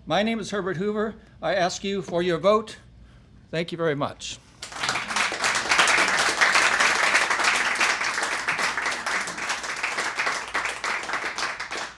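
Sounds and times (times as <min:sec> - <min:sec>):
audience applauding: 0:04.6 - 0:11.9.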